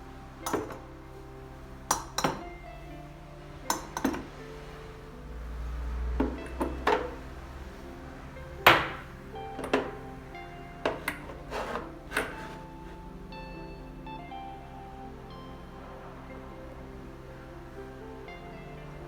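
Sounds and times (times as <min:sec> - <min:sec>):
soft background music: 0:00.0 - 0:19.0
dishes clinking and knocking: 0:00.5 - 0:00.8, 0:01.9 - 0:02.5, 0:03.7 - 0:04.3, 0:06.2 - 0:07.2, 0:08.7 - 0:10.0, 0:10.8 - 0:12.6.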